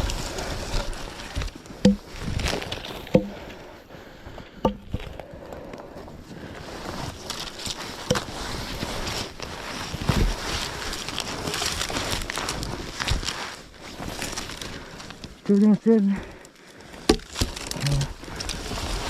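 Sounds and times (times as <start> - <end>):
rustling: 0.0 - 3.8, 4.4 - 19.0
wind: 0.0 - 19.0
wooden knocks with hollow ring: 1.8 - 2.2, 3.1 - 3.4, 4.6 - 5.1, 17.1 - 17.4.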